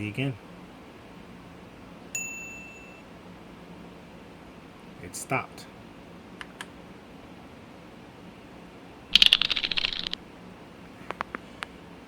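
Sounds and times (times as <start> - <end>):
mechanical keyboard clacking: 9.1 - 10.2.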